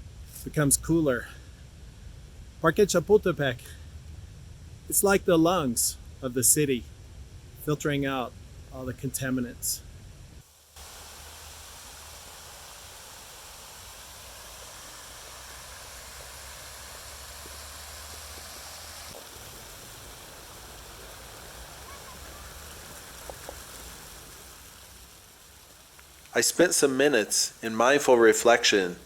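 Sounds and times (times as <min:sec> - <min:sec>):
fountain water spray hissing: 0:04.9 - 0:06.8, 0:10.4 - 0:29.0.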